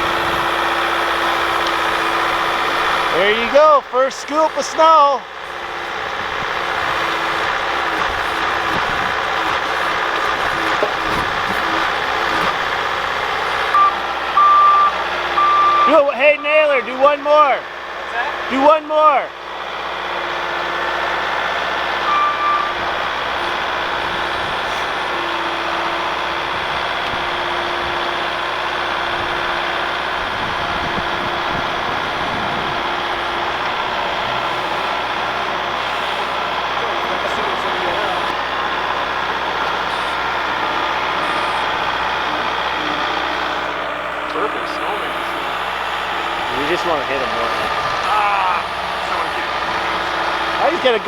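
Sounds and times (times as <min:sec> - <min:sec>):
constant whine: 0:00.0 - 0:51.0
loader engine running: 0:00.0 - 0:51.0
backup alarm beeping: 0:13.7 - 0:17.4, 0:22.1 - 0:22.8.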